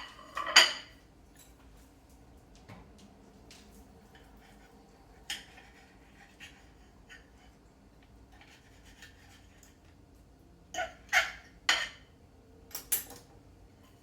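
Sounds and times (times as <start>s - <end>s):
knife cutting and scraping: 8.4s - 9.8s.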